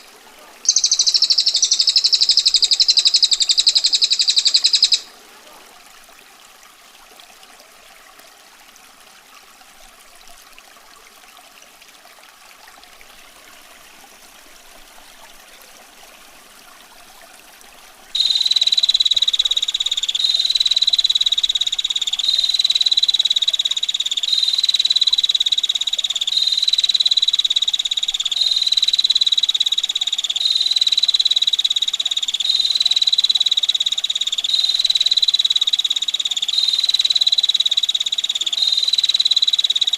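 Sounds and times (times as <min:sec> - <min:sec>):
stream trickling: 0:00.0 - 0:39.9
bird rattling trill: 0:00.6 - 0:05.1.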